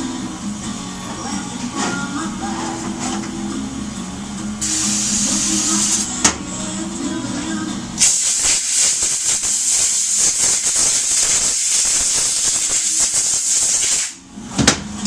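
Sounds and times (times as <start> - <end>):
hiss of pressurized air: 4.6 - 6.1, 8.0 - 14.2.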